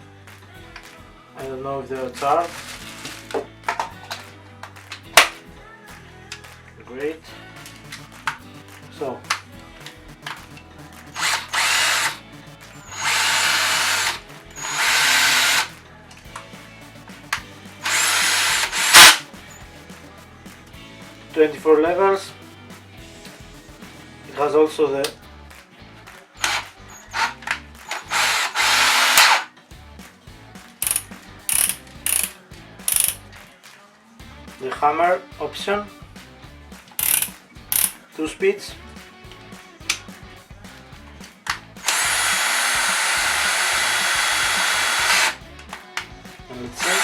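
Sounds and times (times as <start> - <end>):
cordless drill running: 11.1 - 12.2, 12.8 - 15.7, 17.8 - 19.2, 26.4 - 29.5, 41.8 - 45.4, 46.8 - 47.0.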